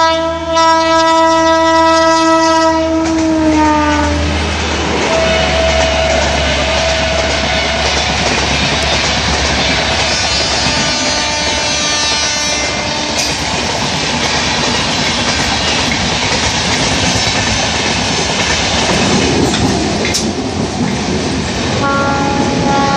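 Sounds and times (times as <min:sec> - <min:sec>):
train horn: 0:00.0 - 0:04.4, 0:05.0 - 0:08.8, 0:09.7 - 0:13.7, 0:21.8 - 0:22.9
train wheels clattering on rail: 0:02.3 - 0:22.9.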